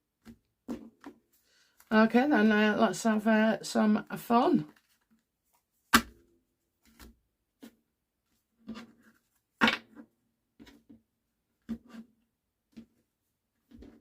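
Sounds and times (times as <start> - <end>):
cards slapping on a table: 5.9 - 6.2.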